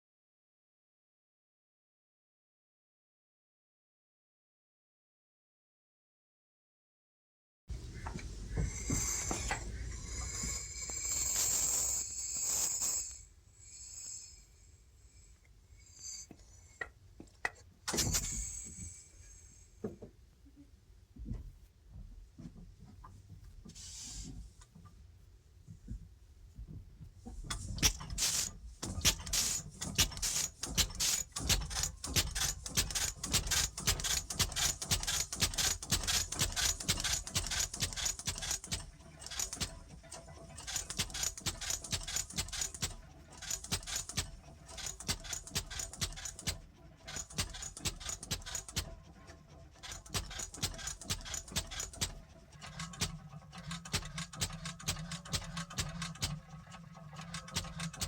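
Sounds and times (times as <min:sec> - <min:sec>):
rapid clicking and rattling: 0:27.2 - 0:58.0.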